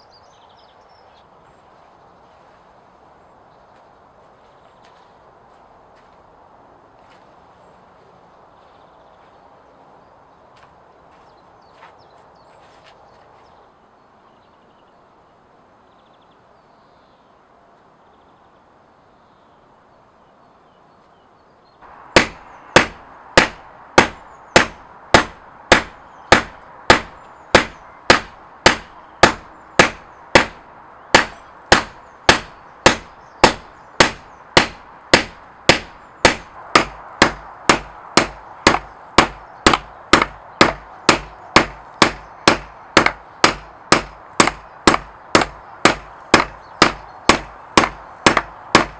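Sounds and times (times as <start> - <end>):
hammer striking steel on anvil: 22.2 - 30.6, 31.2 - 48.9.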